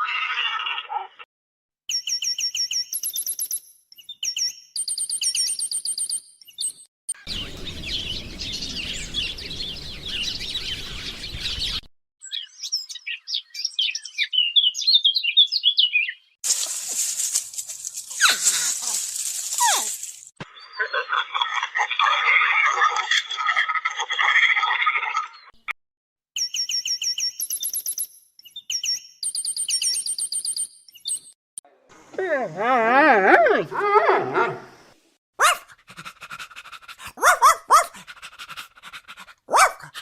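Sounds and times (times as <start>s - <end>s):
bird chirps and trills: 1.9s - 16.3s, 26.4s - 31.4s.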